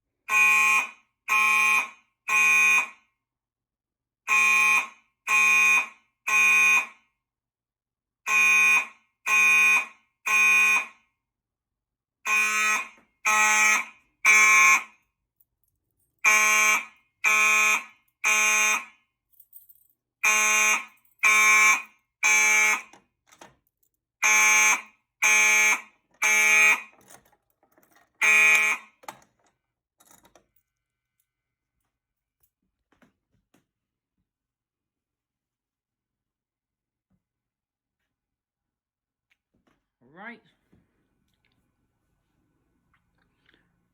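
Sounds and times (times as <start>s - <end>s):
electronic horn blasts: 0.3s - 3.0s, 4.3s - 7.0s, 8.3s - 11.0s, 12.3s - 15.0s, 16.2s - 19.0s, 20.2s - 22.9s, 24.2s - 26.9s, 28.2s - 29.0s.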